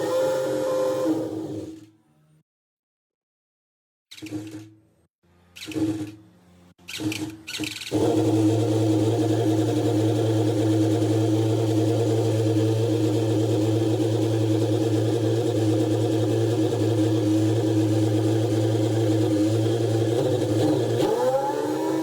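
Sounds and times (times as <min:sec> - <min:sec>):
motorcycle engine idling: 0:07.9 - 0:21.0.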